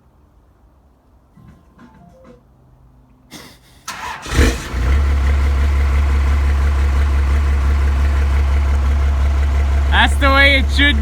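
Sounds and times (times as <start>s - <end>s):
truck engine cranking and idling: 3.8s - 11.0s.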